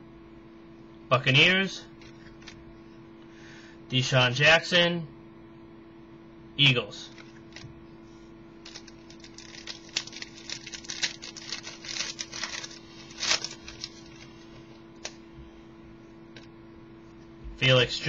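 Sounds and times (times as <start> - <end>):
low electrical hum: 0.0 - 18.0
trading cards clicking and rustling: 8.6 - 14.4.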